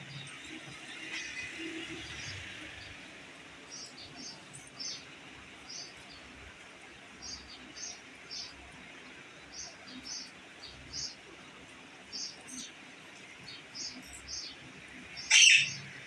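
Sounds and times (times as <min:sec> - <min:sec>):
parrot chirping: 0:15.2 - 0:16.0.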